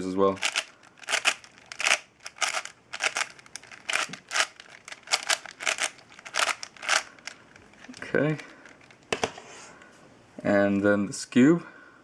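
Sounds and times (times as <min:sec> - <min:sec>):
plastic puzzle layers clicking: 0:00.4 - 0:09.0.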